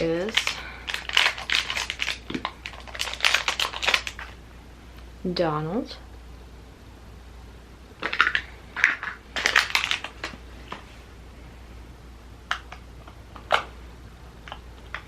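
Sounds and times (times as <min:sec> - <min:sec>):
packaging crinkling and rustling: 0:00.0 - 0:04.4, 0:08.0 - 0:11.0.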